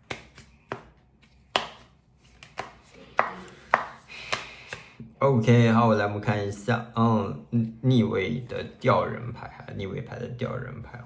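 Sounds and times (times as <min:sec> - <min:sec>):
cards tapping on a table: 0:00.0 - 0:00.9, 0:01.5 - 0:04.5.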